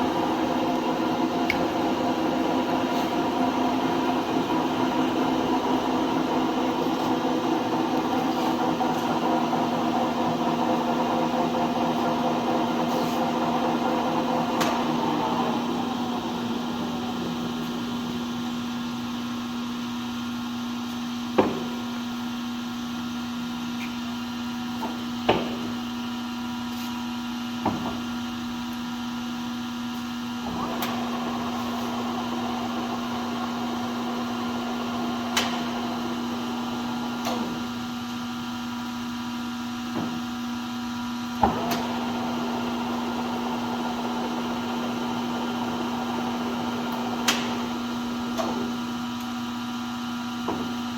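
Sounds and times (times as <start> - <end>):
lathe humming: 0.0 - 18.7, 30.5 - 37.2, 41.5 - 48.4.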